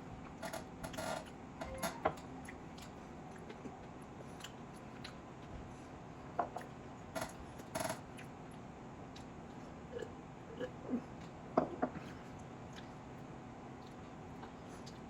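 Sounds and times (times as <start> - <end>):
chewing sounds: 2.4 - 6.8, 8.1 - 11.4, 12.0 - 15.0.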